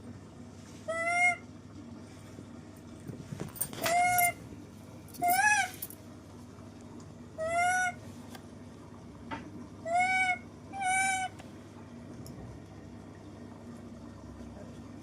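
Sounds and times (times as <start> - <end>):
baby monkey crying: 3.8 - 4.4, 5.2 - 5.8, 7.4 - 8.0, 9.9 - 11.4.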